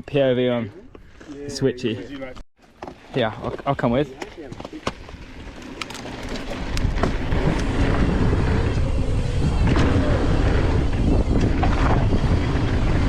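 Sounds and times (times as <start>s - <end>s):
bike clicks and rattles: 5.5s - 7.8s
tyres rumbling over dirt: 5.5s - 8.0s.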